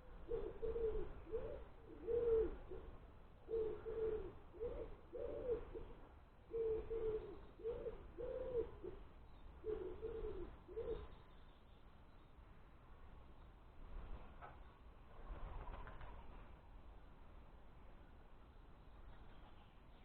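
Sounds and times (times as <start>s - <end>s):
pigeon cooing: 0.2s - 2.9s, 3.5s - 11.1s.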